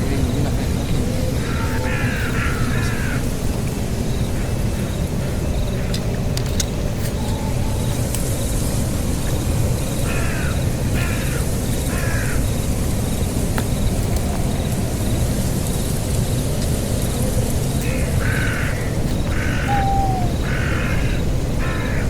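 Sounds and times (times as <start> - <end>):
animal harsh caw-like calls: 1.4 - 3.2, 17.9 - 22.0.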